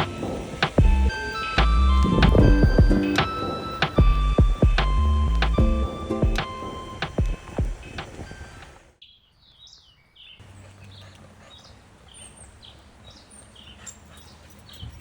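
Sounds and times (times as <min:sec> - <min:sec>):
piano-like background music: 0:00.0 - 0:07.9
small birds chirping: 0:00.0 - 0:15.0.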